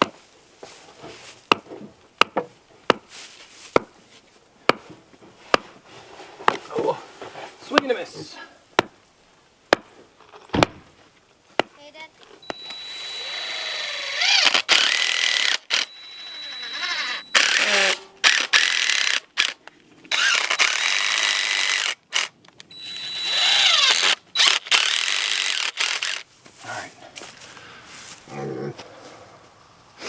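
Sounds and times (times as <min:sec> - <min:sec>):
cordless drill driving screws: 0:12.4 - 0:26.2.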